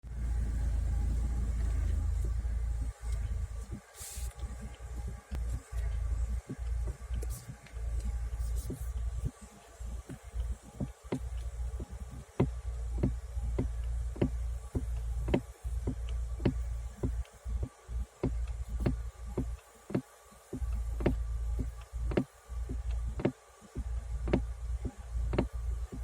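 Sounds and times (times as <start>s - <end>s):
low rumble: 0.0s - 19.4s.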